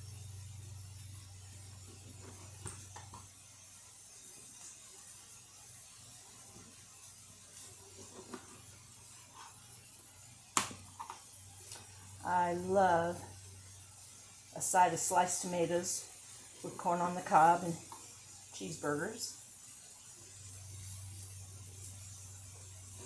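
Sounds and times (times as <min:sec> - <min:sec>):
low steady hum: 0:00.0 - 0:03.4, 0:10.6 - 0:19.4
hiss of food frying: 0:00.0 - 0:23.0.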